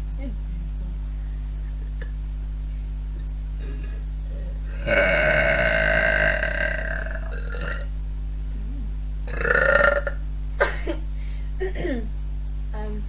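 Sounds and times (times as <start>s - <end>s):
girl burping: 3.6s - 7.9s.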